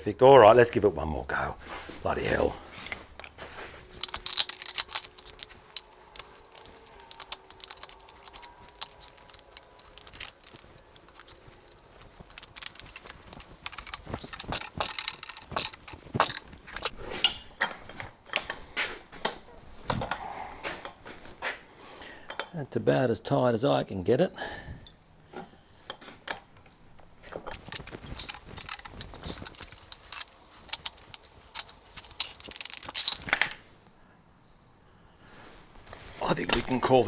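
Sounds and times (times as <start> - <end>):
tool ratcheting metal clicks: 3.9 - 16.9, 27.5 - 33.3.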